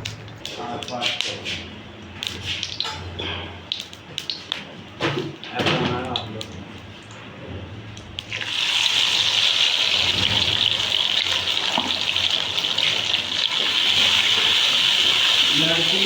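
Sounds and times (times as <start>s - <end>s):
water running from tap: 8.2s - 16.0s.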